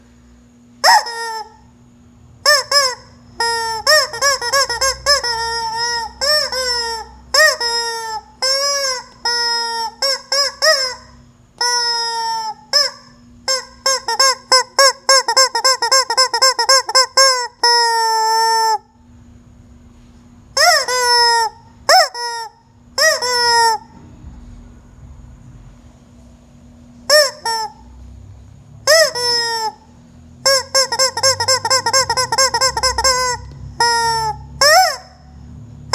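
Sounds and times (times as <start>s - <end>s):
chicken squawking: 0.8s - 1.7s, 2.4s - 18.9s, 20.6s - 23.9s, 27.1s - 27.9s, 28.8s - 35.3s.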